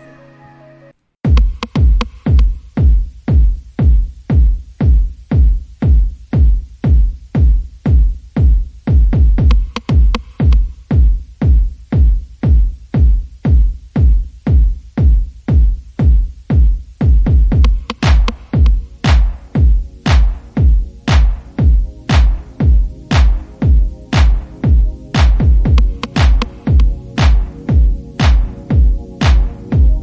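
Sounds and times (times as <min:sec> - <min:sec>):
electronic music with heavy kick drum: 0:01.2 - 0:30.0.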